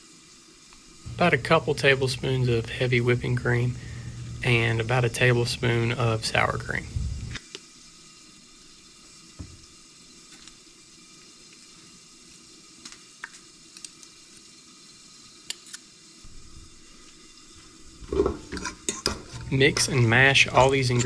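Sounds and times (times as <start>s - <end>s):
food sizzling in oil: 0.0s - 21.0s.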